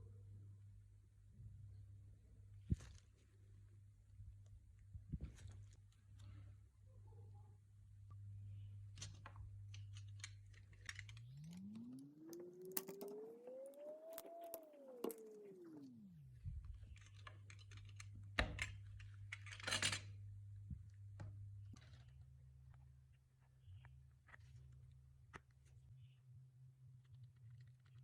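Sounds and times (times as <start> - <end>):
clicks of small parts handled: 9.7 - 15.9
low hum: 10.8 - 17.0
rising and falling tone: 11.2 - 16.4.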